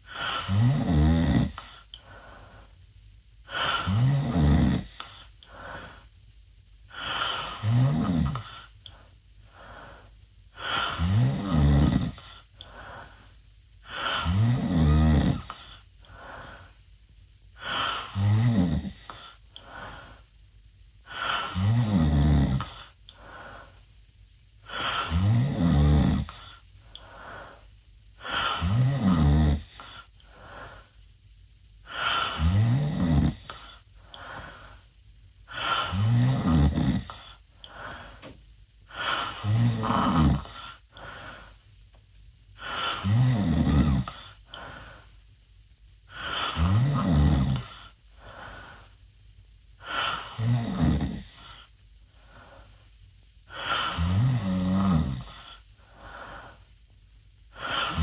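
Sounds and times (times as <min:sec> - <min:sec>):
quiet breaths: 0:00.0 - 0:58.0
rough rattling snores: 0:00.2 - 0:01.9, 0:03.5 - 0:05.2, 0:07.0 - 0:08.7, 0:10.6 - 0:12.4, 0:13.8 - 0:15.8, 0:17.6 - 0:19.4, 0:21.1 - 0:23.0, 0:24.7 - 0:26.6, 0:28.2 - 0:30.1, 0:31.9 - 0:34.6, 0:35.5 - 0:37.4, 0:38.9 - 0:41.4, 0:42.6 - 0:44.7, 0:46.1 - 0:47.9, 0:49.8 - 0:51.7, 0:53.5 - 0:55.6, 0:57.5 - 0:58.0.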